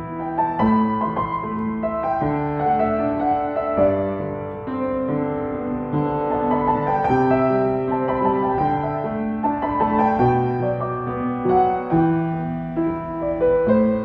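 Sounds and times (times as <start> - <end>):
piano pop ballad: 0.0 - 14.0.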